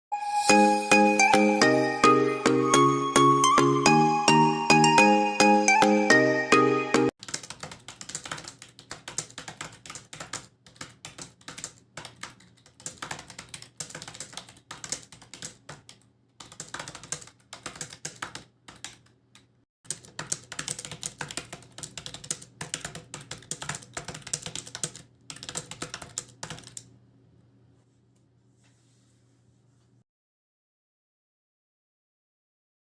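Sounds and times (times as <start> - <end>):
fast typing on keyboard: 7.2 - 26.9.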